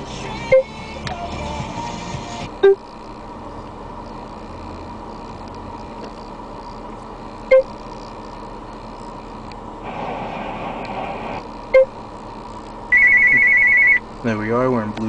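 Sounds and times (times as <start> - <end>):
music from car stereo: 0.0 - 2.6.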